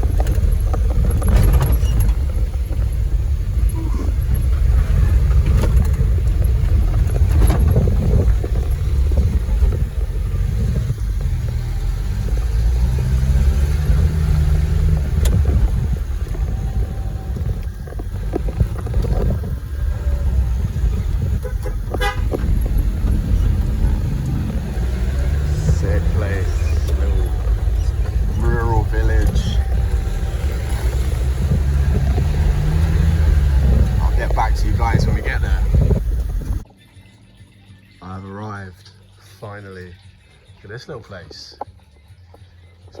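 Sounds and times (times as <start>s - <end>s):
car engine and road rumble: 0.0s - 43.0s
small knocks and rattles: 4.2s - 36.6s.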